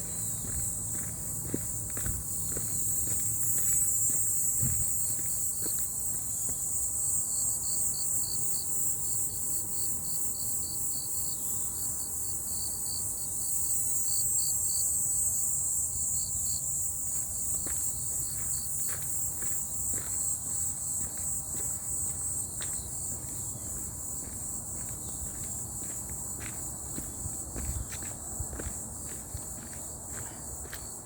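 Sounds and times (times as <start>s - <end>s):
faint footsteps on path: 0.0s - 7.6s, 16.7s - 31.0s
insects calling in chorus: 0.0s - 31.0s
pulsing insect call: 0.0s - 31.0s.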